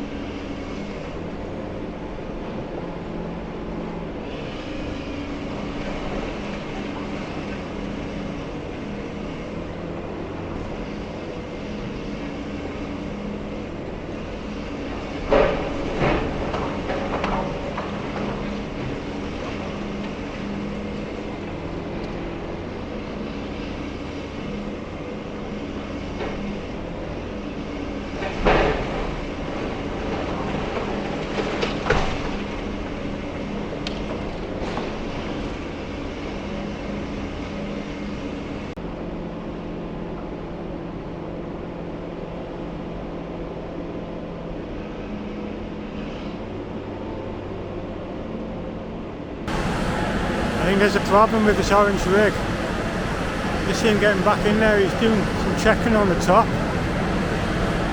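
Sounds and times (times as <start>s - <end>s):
excavator diesel engine hum: 49.5s - 57.9s.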